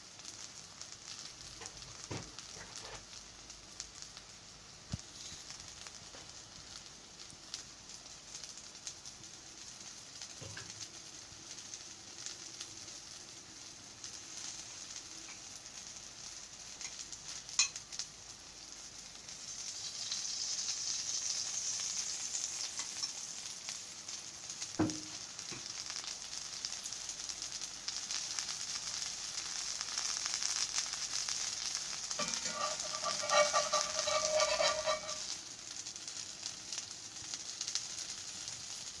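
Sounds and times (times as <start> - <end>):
pancake sizzling in a pan: 0.0 - 39.0
squealing tone: 32.2 - 35.3.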